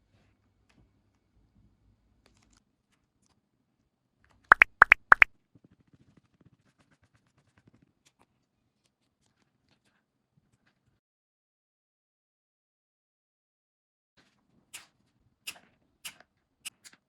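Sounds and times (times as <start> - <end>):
faint crinkling of tape: 2.2 - 3.4
squeaky squelches of water bubble: 4.5 - 5.3.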